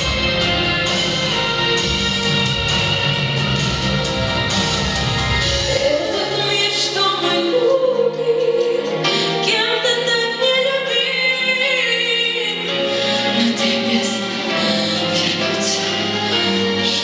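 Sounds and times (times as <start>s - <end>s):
instrumental accompaniment: 0.0s - 7.6s.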